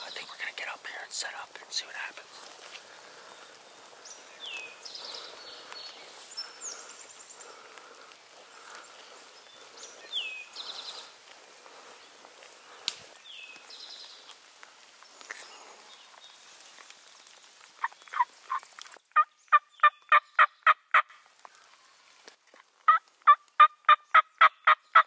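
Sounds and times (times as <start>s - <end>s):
turkey yelping: 22.9s - 24.8s.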